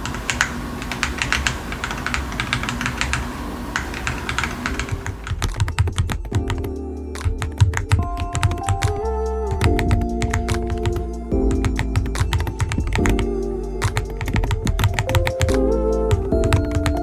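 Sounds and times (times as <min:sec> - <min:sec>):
mechanical keyboard typing: 0:00.0 - 0:17.0
background music: 0:04.9 - 0:17.0.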